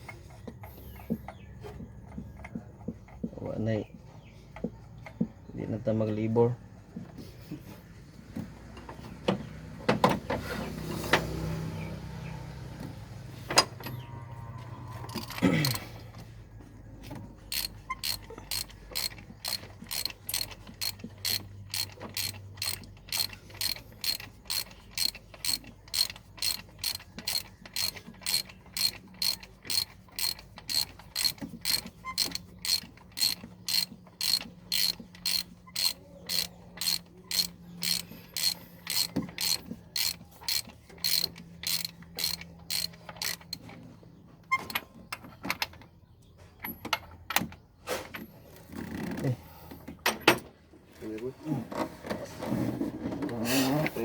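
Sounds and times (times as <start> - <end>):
ratchet wrench clicking: 15.1 - 15.8, 17.5 - 43.7.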